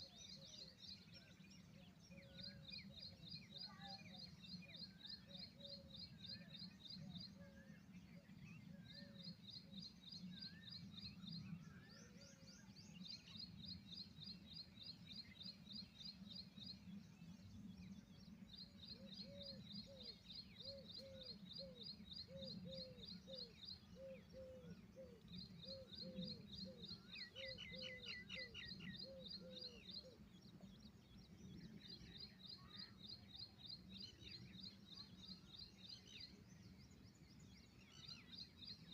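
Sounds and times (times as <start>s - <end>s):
faint bird calls: 18.9s - 30.4s.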